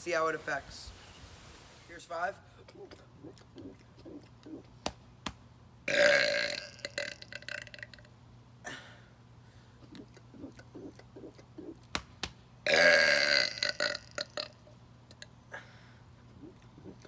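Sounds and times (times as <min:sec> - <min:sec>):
man burping: 0:05.9 - 0:07.9, 0:12.7 - 0:14.5.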